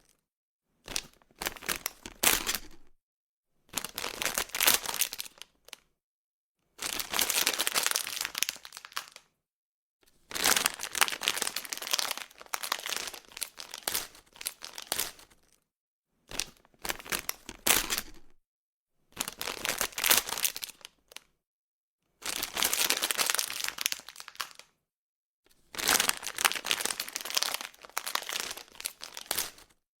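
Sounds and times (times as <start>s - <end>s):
plastic bag crumpling: 10.4s - 14.9s, 22.6s - 24.6s, 25.8s - 29.6s.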